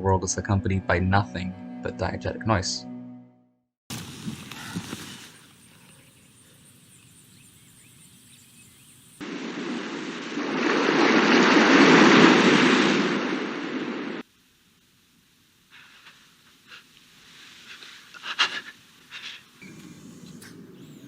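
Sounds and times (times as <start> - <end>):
faint ambient hiss: 14.2 - 21.0.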